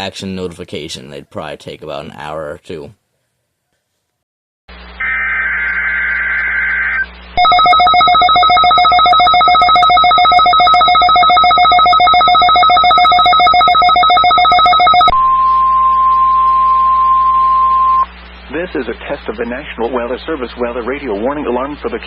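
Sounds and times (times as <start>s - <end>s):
pulsing electronic alarm: 5.0s - 18.1s
steady single-pitch alarm tone: 5.0s - 18.1s
warbling digital data tones: 5.0s - 18.1s.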